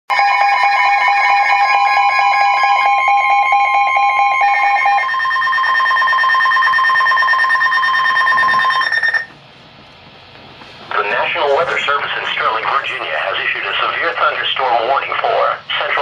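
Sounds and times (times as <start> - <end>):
pulsing alarm beeps: 0.1 - 9.3.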